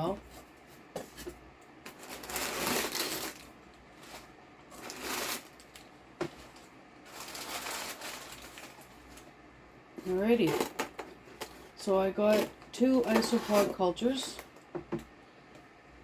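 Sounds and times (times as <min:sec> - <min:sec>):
packaging rustling and crinkling: 0:01.1 - 0:09.3.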